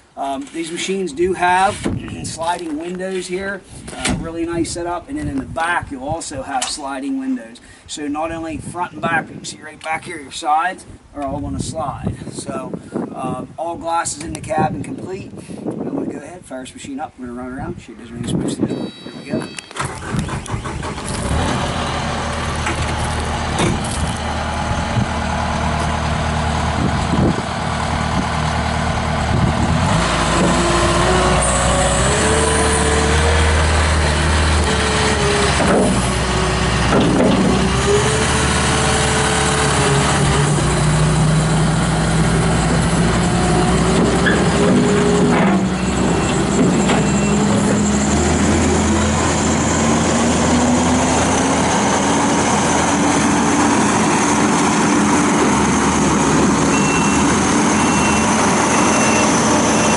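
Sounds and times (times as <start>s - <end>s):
diesel engine revving: 19.8s - 59.9s.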